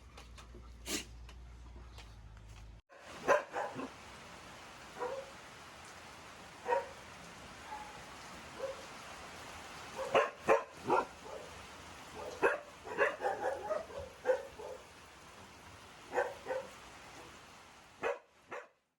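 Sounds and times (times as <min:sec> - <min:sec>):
dog barking: 0:02.9 - 0:04.0, 0:05.0 - 0:05.4, 0:06.6 - 0:07.0, 0:07.6 - 0:08.9, 0:09.9 - 0:14.9, 0:16.1 - 0:16.8, 0:18.0 - 0:18.8.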